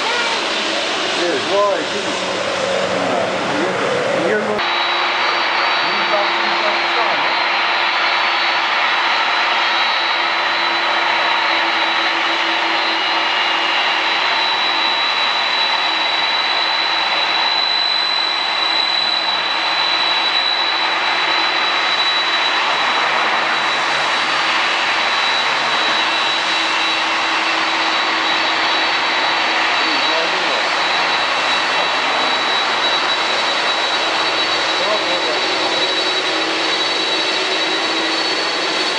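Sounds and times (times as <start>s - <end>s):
high-pitched engine whine: 0.0s - 38.9s
jet engines roaring: 0.0s - 38.9s.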